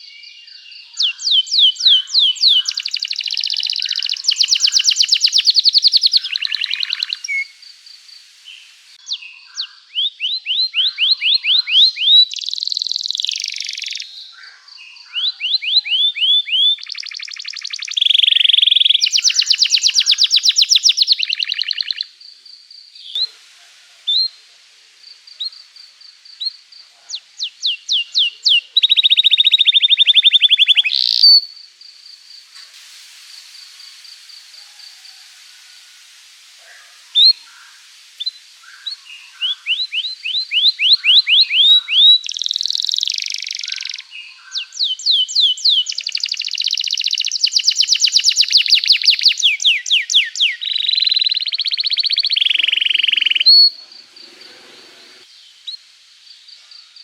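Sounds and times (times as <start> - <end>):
canary singing trills: 0.0 - 7.8, 8.5 - 23.4, 25.2 - 32.0, 36.6 - 55.8
quick downward chirps: 27.4 - 31.4.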